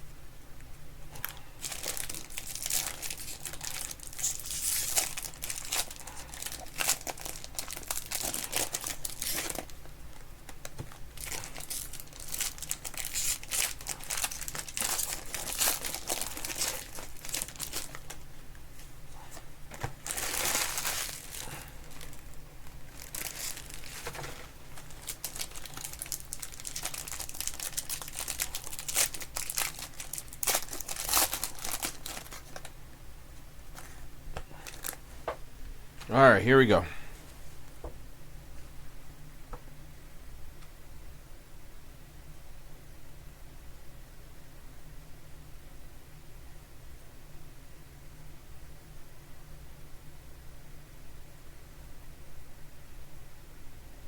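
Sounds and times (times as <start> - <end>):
plastic wrapping crinkling and tearing: 1.2 - 18.3, 19.7 - 32.7, 33.8 - 35.0.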